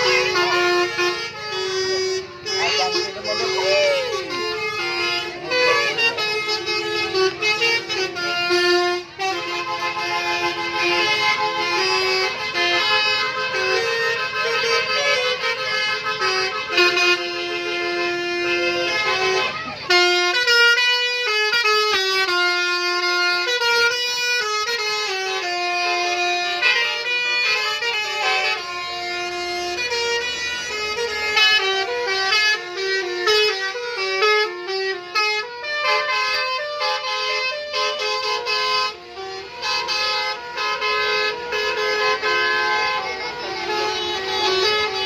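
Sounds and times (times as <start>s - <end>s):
bus horn playing a tune: 0.0s - 45.0s.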